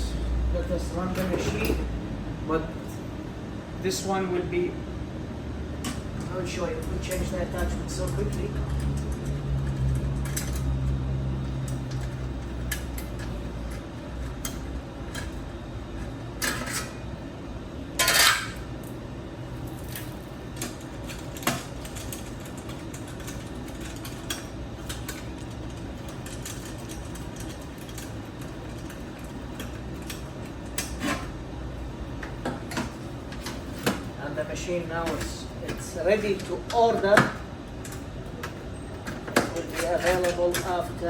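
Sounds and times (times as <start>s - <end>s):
hard parts clinking and knocking: 5.8s - 17.0s, 18.0s - 18.6s, 19.7s - 31.3s, 34.9s - 41.0s.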